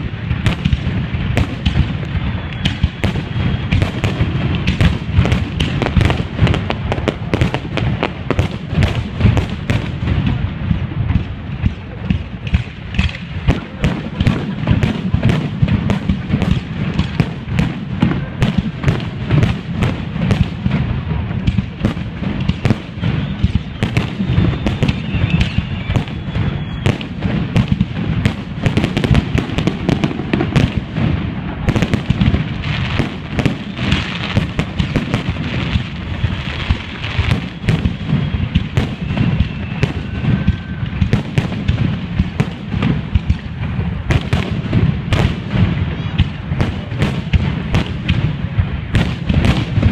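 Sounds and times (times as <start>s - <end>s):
firework bursts and crackling bangs: 0.0s - 49.9s
faint whistles of rising shells: 1.9s - 4.2s, 22.8s - 27.2s, 35.8s - 41.4s.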